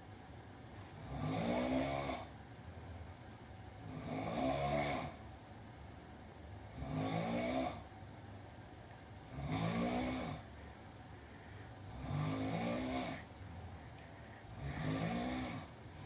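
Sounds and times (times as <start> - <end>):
loud rattling snores: 1.0 - 2.4, 3.8 - 5.2, 6.7 - 7.9, 9.2 - 10.5, 11.8 - 13.3, 14.4 - 15.8
quiet breathing: 10.0 - 16.0.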